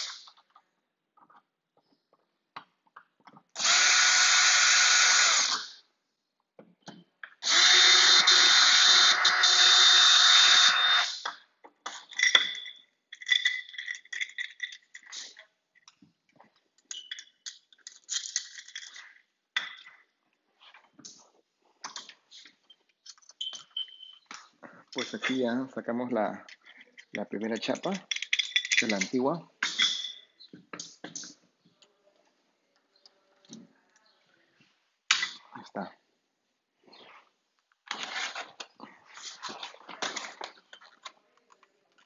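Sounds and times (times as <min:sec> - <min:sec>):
cordless drill running: 0:07.4 - 0:11.1.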